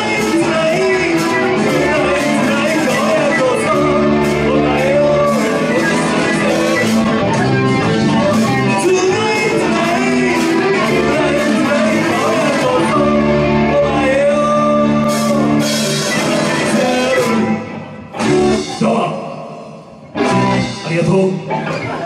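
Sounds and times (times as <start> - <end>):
steady drum beat: 0.0 - 13.2, 15.1 - 17.6
electric guitar: 0.0 - 22.0
live rock band playing: 0.0 - 22.0.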